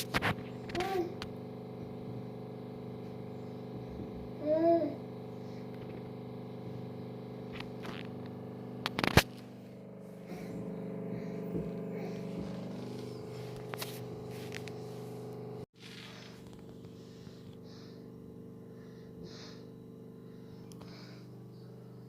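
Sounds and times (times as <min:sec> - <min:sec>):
low mechanical hum: 0:00.0 - 0:22.0.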